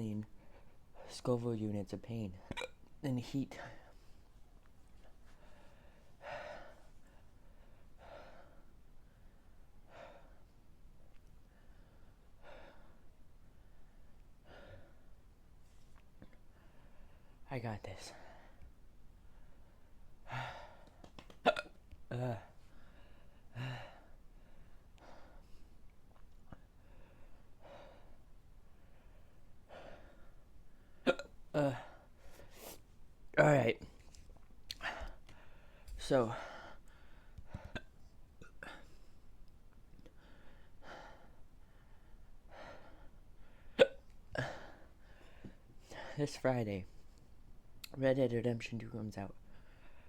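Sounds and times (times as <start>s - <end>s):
man breathing heavily: 5.3s - 8.7s, 19.3s - 21.0s, 22.7s - 25.8s, 26.7s - 28.2s, 28.8s - 30.4s, 40.1s - 43.7s.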